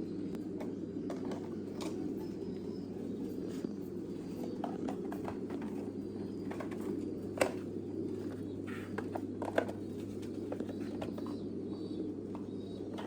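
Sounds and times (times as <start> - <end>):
pigeons cooing: 0.0 - 13.0.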